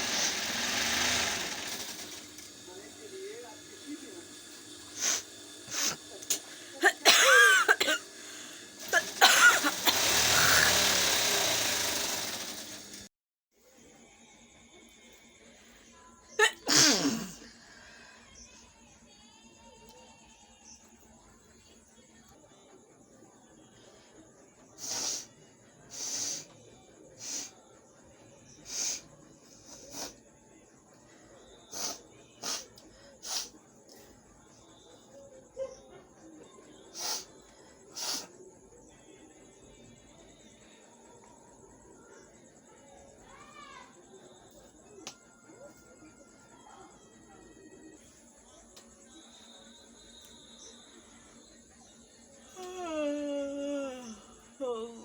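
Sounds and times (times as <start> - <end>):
long hissing blow: 0.0 - 6.8
person sniffing: 5.0 - 6.6.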